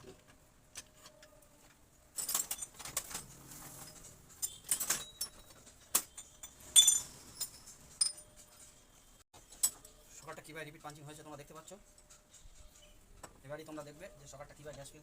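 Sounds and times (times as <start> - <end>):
metallic clinks and rattles: 2.1 - 10.0.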